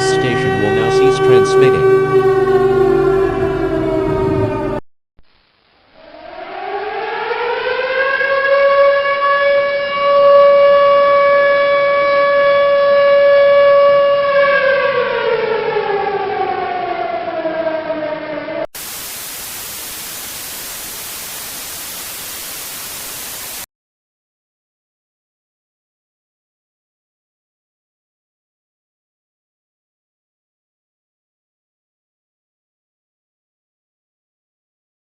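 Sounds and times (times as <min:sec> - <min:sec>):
civil defense siren: 0:00.0 - 0:04.8, 0:06.0 - 0:18.7
static hiss: 0:05.2 - 0:06.1, 0:18.8 - 0:23.7.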